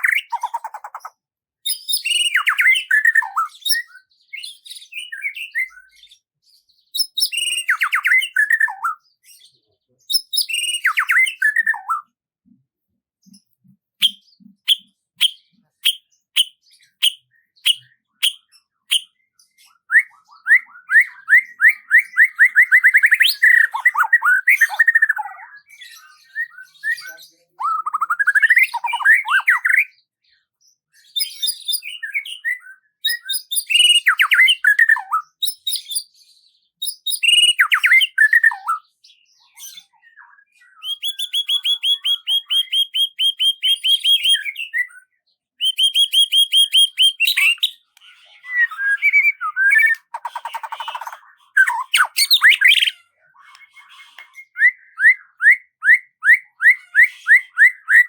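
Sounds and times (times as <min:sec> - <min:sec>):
bird trill: 0:00.0 - 0:06.2, 0:06.9 - 0:09.0, 0:10.1 - 0:12.1, 0:13.3 - 0:30.0, 0:31.2 - 0:36.2, 0:36.8 - 0:40.0, 0:40.6 - 0:58.0
songbirds singing: 0:00.0 - 0:58.0.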